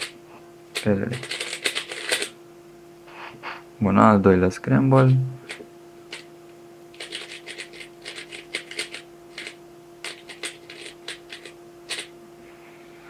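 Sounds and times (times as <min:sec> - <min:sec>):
puzzle cube clicking and scraping: 0:00.8 - 0:02.3, 0:05.0 - 0:06.2, 0:07.0 - 0:12.1.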